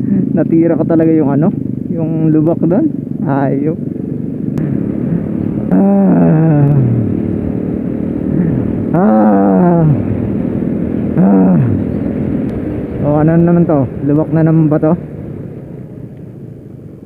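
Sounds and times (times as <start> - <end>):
small motorcycle engine revving: 4.5 - 13.8.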